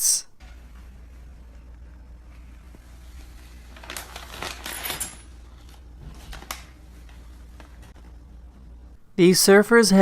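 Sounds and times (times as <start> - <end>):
steady low hum: 0.0 - 10.0
treat packaging rattling and crinkling: 3.6 - 7.8.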